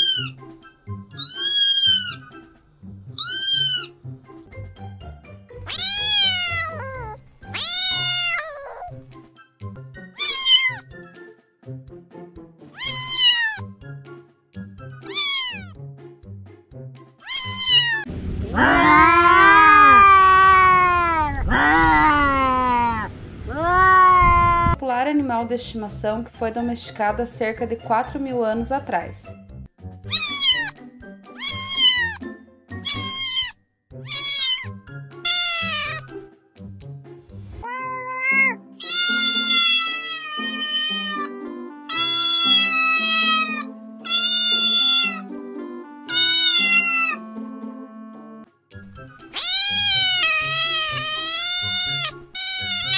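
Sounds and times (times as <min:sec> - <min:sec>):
cat meowing: 0:00.0 - 0:00.4, 0:01.2 - 0:02.3, 0:03.2 - 0:03.9, 0:05.6 - 0:09.0, 0:10.2 - 0:10.8, 0:12.8 - 0:13.7, 0:15.0 - 0:15.8, 0:17.2 - 0:24.8, 0:30.1 - 0:32.2, 0:32.8 - 0:36.1, 0:37.7 - 0:41.3, 0:41.9 - 0:45.3, 0:46.1 - 0:47.2, 0:49.2 - 0:52.9
background music: 0:00.0 - 0:21.0, 0:24.7 - 0:52.9.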